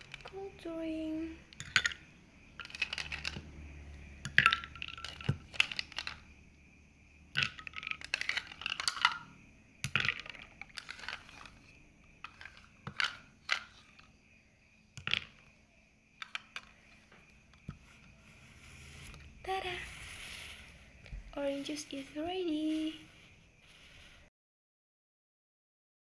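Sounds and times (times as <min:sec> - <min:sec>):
ice cubes clinking in a glass: 0:01.5 - 0:02.0, 0:02.6 - 0:03.4, 0:04.2 - 0:06.2, 0:07.4 - 0:11.5.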